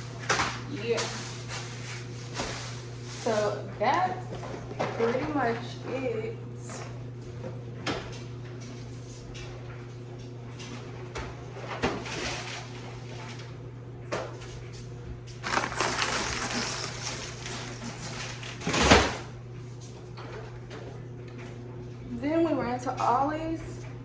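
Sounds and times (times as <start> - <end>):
packaging rustling: 15.4 - 18.7.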